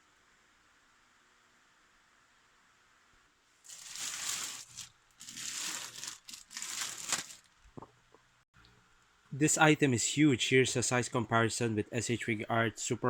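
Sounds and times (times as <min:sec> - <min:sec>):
packaging crinkling and rustling: 0:03.6 - 0:07.9.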